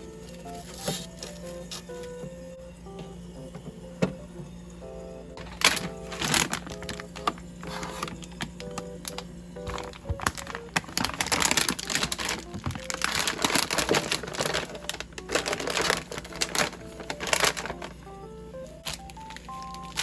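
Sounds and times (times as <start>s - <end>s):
packaging clicking and rustling: 0.0s - 2.0s, 5.4s - 18.0s, 18.8s - 20.0s
soft background music: 0.0s - 20.0s.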